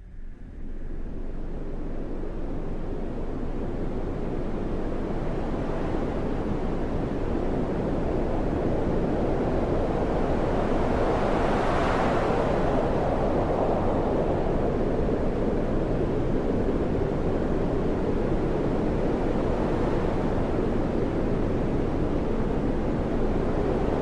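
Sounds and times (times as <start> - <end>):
wind on microphone: 0.2 - 24.0.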